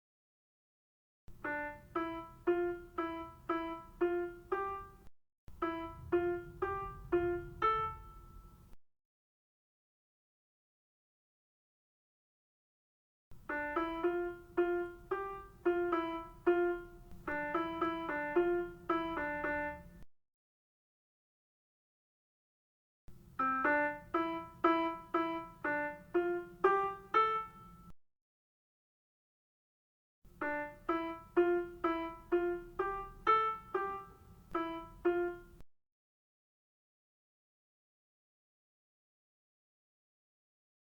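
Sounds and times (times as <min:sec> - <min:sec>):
piano keyboard melody: 0:01.3 - 0:08.8, 0:13.3 - 0:20.0, 0:23.1 - 0:27.9, 0:30.3 - 0:35.6.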